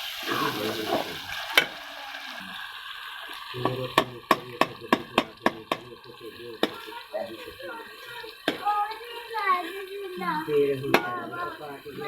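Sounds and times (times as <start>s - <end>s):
spoon knocking against pot: 3.6s - 5.9s, 6.6s - 6.9s, 8.4s - 8.7s, 10.9s - 11.2s.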